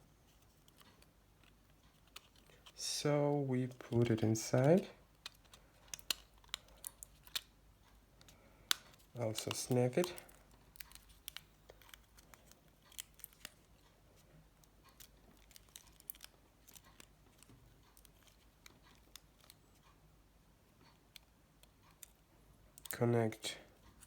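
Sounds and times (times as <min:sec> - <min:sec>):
plastic phone parts clicking: 0:00.6 - 0:02.8, 0:03.7 - 0:07.5, 0:08.2 - 0:13.9, 0:14.6 - 0:19.9.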